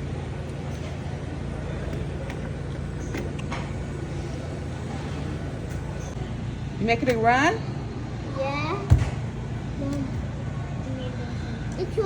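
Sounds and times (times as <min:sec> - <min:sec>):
distant voices: 0:00.0 - 0:12.0
low background hum: 0:00.0 - 0:12.0.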